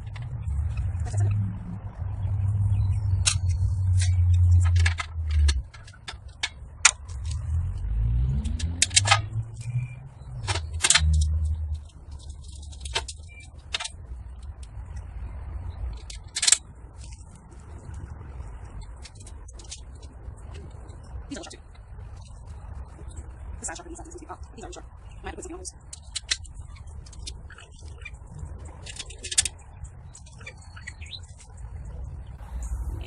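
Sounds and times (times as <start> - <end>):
metallic clicks of screws and panels: 8.4 - 9.3, 10.4 - 14.0
low rumble: 31.9 - 33.0.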